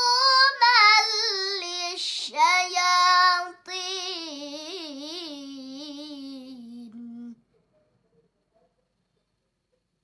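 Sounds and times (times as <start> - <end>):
girl chanting recitation: 0.0 - 7.4.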